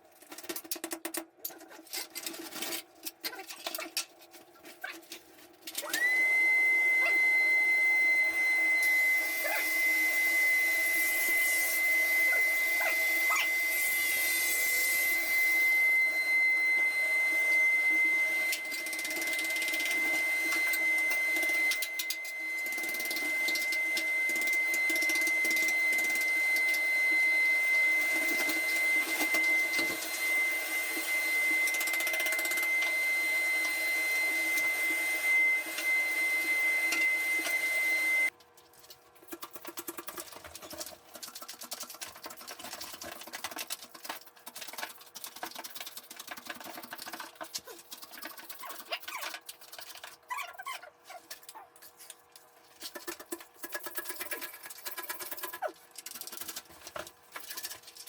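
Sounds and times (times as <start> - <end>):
small electric machine whining: 5.7 - 38.4.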